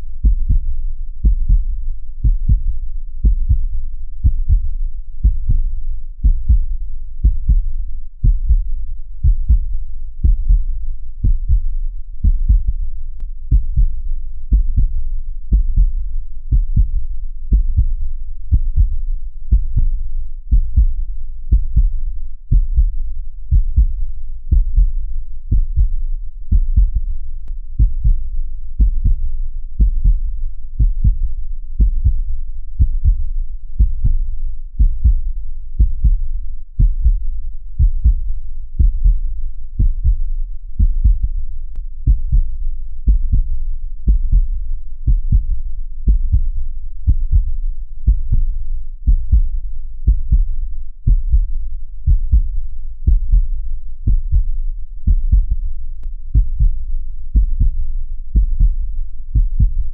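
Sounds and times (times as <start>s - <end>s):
heartbeat thumps: 0.2s - 27.2s, 27.8s - 59.9s.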